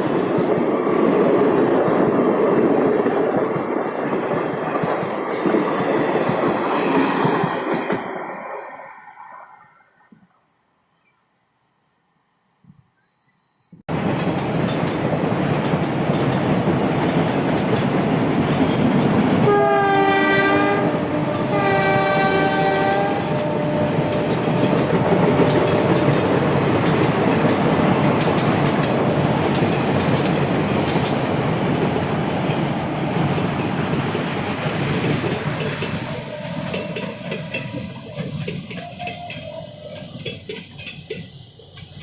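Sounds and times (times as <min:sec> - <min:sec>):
train wheels rushing on rails: 0:00.0 - 0:09.6, 0:13.9 - 0:42.0
locomotive air horn: 0:19.4 - 0:26.1, 0:36.1 - 0:37.5, 0:38.8 - 0:40.2.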